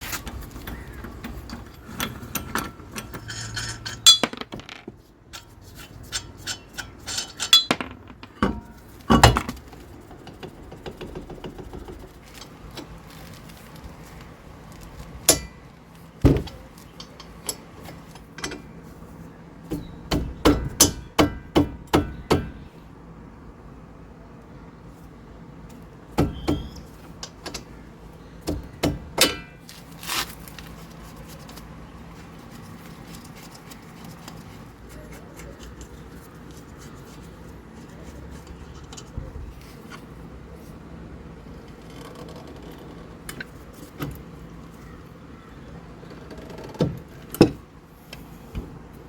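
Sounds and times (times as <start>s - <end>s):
metal tools clinking and knocking: 0.2s - 9.6s, 16.3s - 18.7s.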